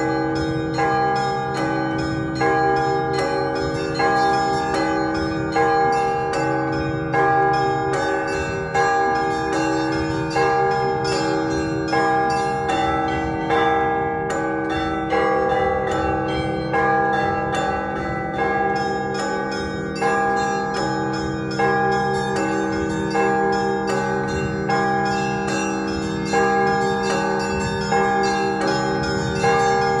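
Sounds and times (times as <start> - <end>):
heavy church bell strokes: 0.0 - 30.0
medium bells ringing: 0.0 - 30.0
small bells chiming rapidly: 0.0 - 30.0.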